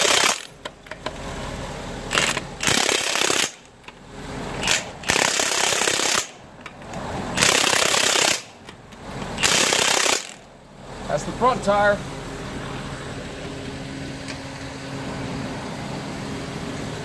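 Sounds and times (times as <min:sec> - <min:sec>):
impact wrench hammering lug nuts: 0:00.0 - 0:01.2, 0:02.1 - 0:04.0, 0:04.6 - 0:10.5.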